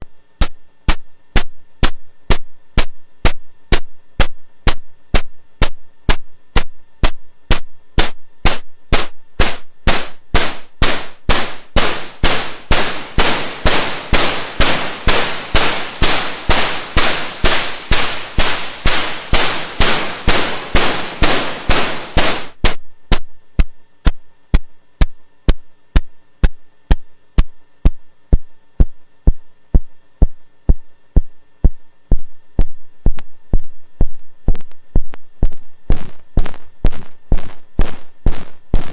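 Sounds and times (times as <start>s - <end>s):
noise percussion hits: 0.4s - 22.8s, 35.4s - 38.9s.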